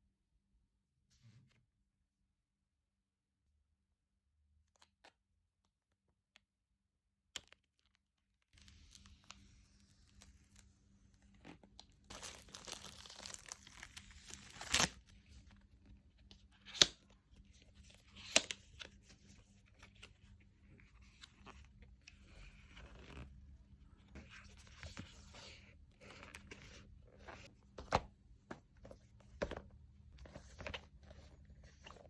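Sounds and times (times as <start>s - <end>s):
packaging rustling: 11.9s - 15.0s.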